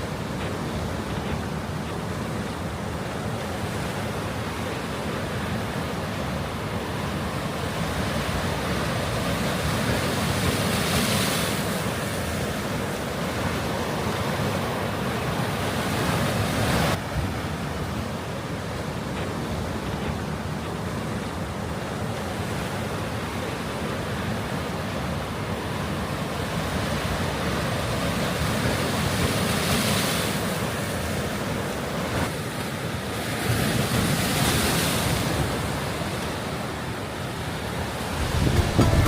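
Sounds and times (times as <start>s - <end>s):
sea waves washing ashore: 0.0s - 39.0s
wind on microphone: 38.0s - 39.0s.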